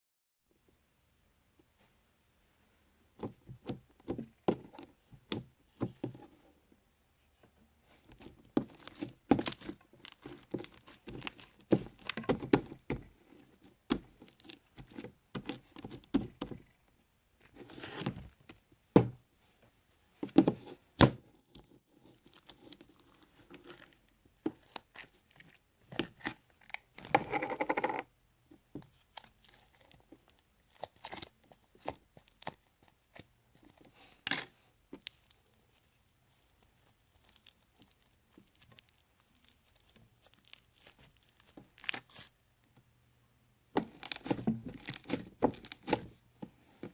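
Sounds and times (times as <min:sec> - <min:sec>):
crunchy slime crackling and popping: 0:08.1 - 0:13.0, 0:34.3 - 0:42.3, 0:43.8 - 0:46.2.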